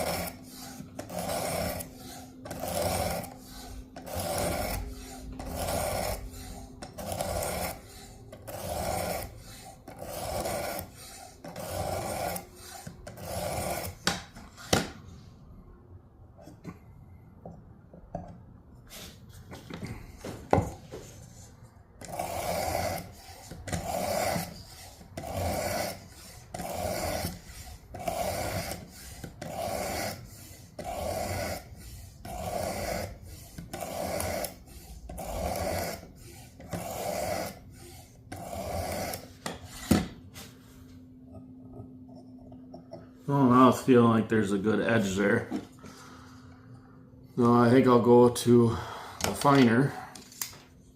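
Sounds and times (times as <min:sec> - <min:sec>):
sharpener scraping knife blade: 0:00.0 - 0:14.8, 0:22.0 - 0:40.0.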